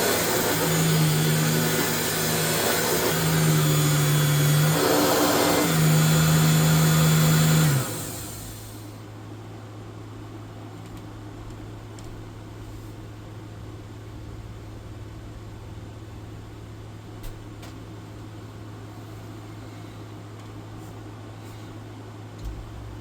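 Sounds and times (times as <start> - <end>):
stick vacuum motor humming: 0.0 - 8.8.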